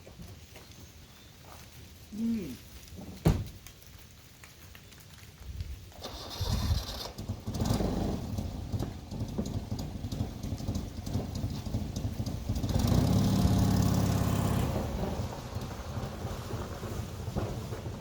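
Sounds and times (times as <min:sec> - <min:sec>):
small engine running: 0:06.0 - 0:17.0.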